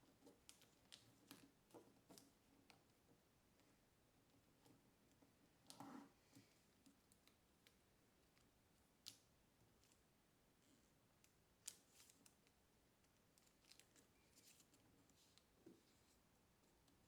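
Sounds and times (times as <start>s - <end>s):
paper crackling as it's folded: 11.6s - 12.5s, 13.4s - 16.2s.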